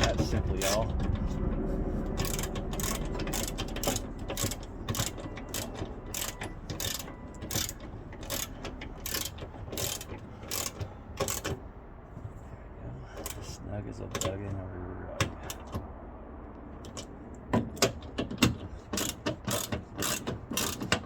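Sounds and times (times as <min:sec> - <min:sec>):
socket ratchet clicking: 0:02.2 - 0:11.6, 0:17.7 - 0:21.0.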